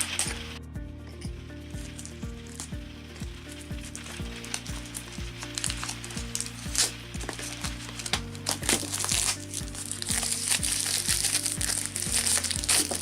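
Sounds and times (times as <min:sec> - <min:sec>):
plastic wrap tearing and crinkling: 0:00.0 - 0:00.6, 0:03.5 - 0:13.0
background music with beat: 0:00.0 - 0:13.0.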